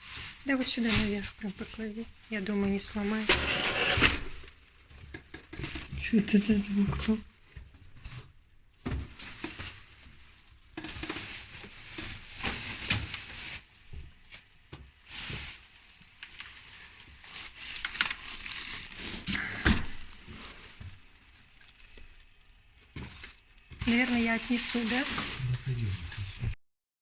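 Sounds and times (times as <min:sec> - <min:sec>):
plastic bags rustling: 0:00.0 - 0:26.6.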